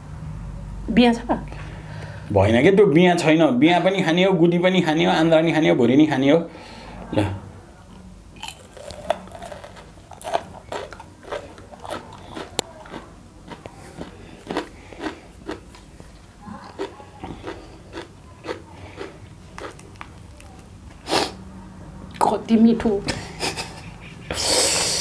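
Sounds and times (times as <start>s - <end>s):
chewing and crunching: 8.4s - 21.0s.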